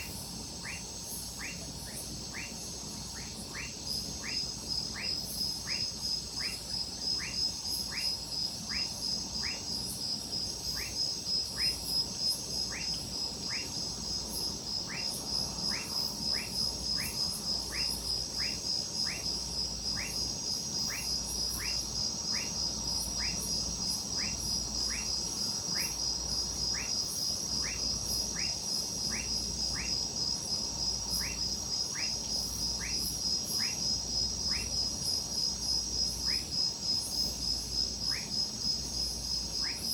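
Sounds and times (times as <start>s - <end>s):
frog calling: 0.0s - 2.5s, 15.7s - 19.2s, 20.8s - 22.6s, 23.2s - 23.5s, 26.7s - 27.0s, 27.6s - 30.0s, 31.1s - 32.2s, 32.8s - 33.8s, 34.4s - 34.8s, 36.2s - 36.5s, 39.6s - 39.9s
crickets trilling: 0.0s - 39.9s.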